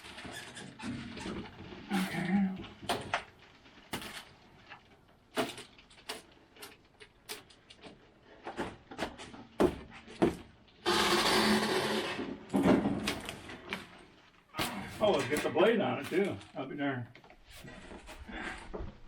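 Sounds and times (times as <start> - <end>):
knocks and clatter of parts: 2.6 - 14.2
loud sliding scrape: 10.9 - 12.2.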